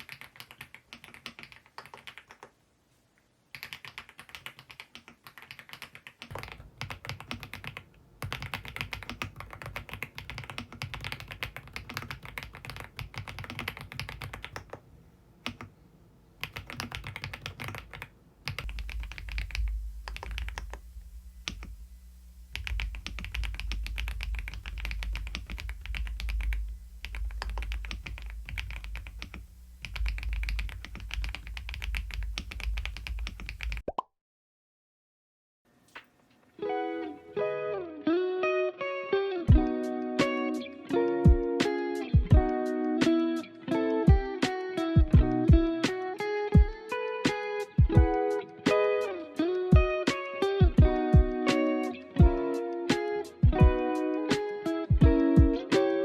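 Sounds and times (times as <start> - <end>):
fast mechanical keyboard typing: 0.0 - 2.5, 3.5 - 14.8, 16.4 - 20.8, 22.6 - 33.8.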